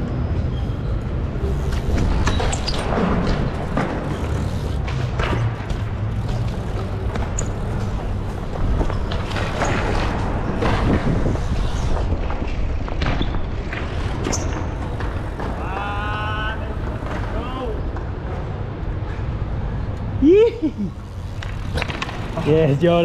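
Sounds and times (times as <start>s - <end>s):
bike tyres rolling on concrete: 0.0s - 23.0s
bike scraping: 0.1s - 23.0s
knocks and clacks of bike landings: 0.5s - 20.1s
person shouting: 15.6s - 17.8s.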